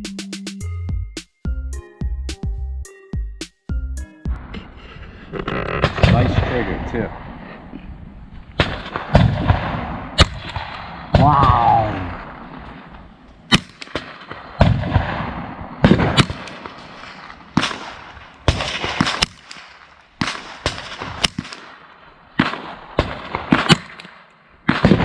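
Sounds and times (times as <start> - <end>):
rifle shots with echo: 8.5 - 11.3, 12.0 - 25.0.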